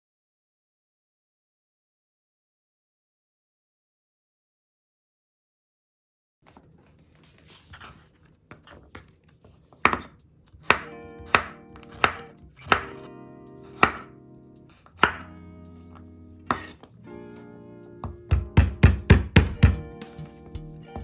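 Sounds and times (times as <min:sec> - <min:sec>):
knife chopping on cutting board: 0:09.7 - 0:14.1, 0:14.7 - 0:15.4, 0:16.5 - 0:16.9, 0:18.0 - 0:20.2.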